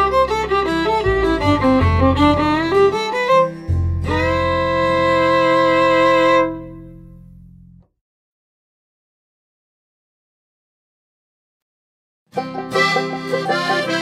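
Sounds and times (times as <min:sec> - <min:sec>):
violin music over bass line: 0:00.0 - 0:07.9, 0:12.4 - 0:14.0.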